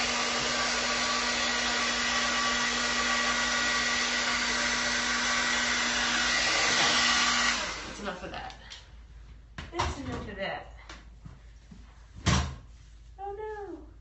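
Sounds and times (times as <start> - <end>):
hair dryer blowing: 0.0 - 8.4.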